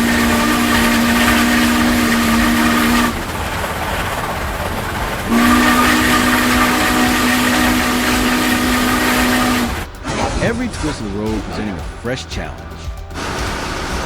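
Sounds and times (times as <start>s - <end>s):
air horn blasts: 0.0s - 3.3s, 5.3s - 10.2s
low rumble: 0.0s - 14.0s.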